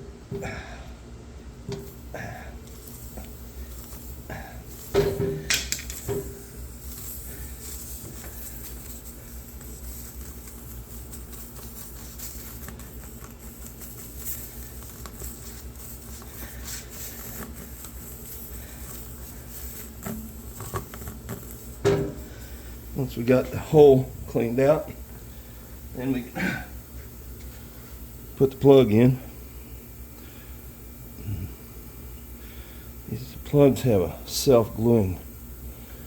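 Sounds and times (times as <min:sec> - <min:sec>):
reamer scraping rubber: 0:01.7 - 0:29.0.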